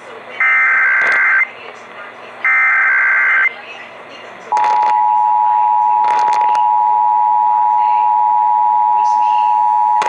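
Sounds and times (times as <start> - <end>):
two-tone alarm: 0.4 - 1.5, 2.4 - 3.5, 4.6 - 10.0.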